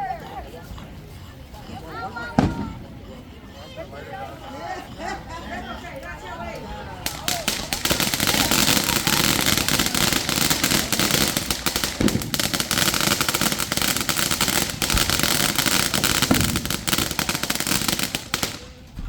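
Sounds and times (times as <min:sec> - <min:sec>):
fireworks crackling: 0:02.3 - 0:03.2, 0:07.0 - 0:19.0.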